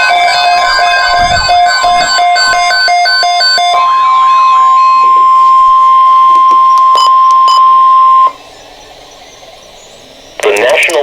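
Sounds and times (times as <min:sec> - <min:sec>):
steady loud alarm beep: 0:00.0 - 0:08.4
pulsing electronic tone: 0:00.0 - 0:11.0.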